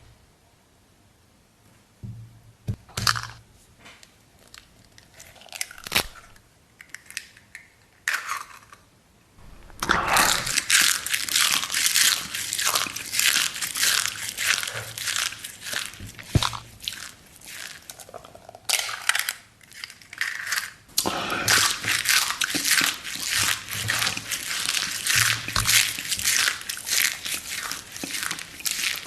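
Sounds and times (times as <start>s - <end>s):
crunchy chewing: 9.5s - 29.0s.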